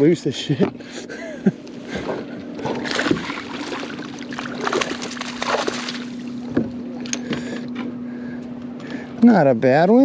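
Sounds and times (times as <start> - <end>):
steady low hum: 0.0 - 10.0
water splashing and sloshing: 1.6 - 7.9.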